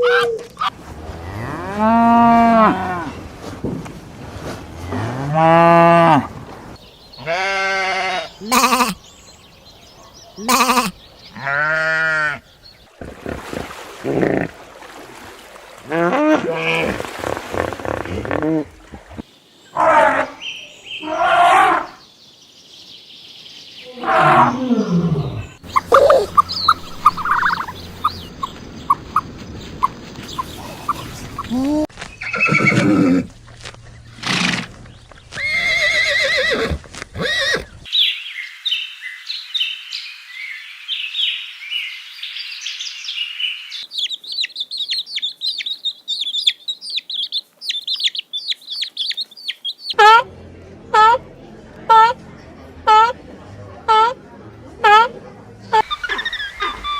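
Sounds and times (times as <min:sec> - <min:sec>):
farm animal calls: 0:07.1 - 0:09.1, 0:10.0 - 0:12.5, 0:23.8 - 0:33.3, 0:52.8 - 0:53.2.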